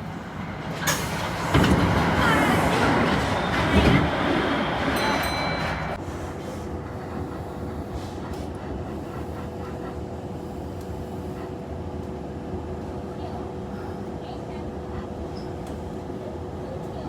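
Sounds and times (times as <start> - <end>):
train rushing noise: 0.0 - 12.0
train hum: 0.0 - 17.0.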